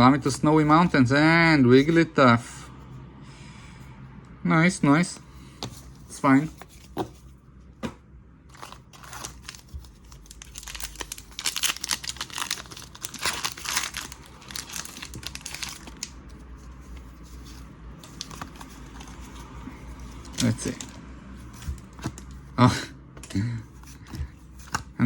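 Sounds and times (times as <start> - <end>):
foil wrapper crinkling and tearing: 8.5 - 16.2.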